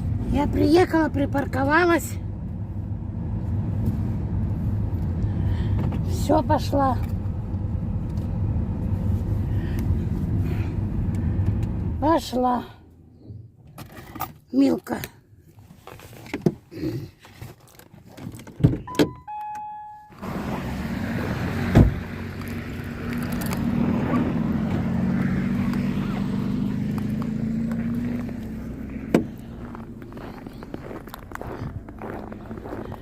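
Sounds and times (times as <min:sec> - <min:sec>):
street traffic: 0:00.0 - 0:33.0
car engine passing close: 0:20.1 - 0:33.0.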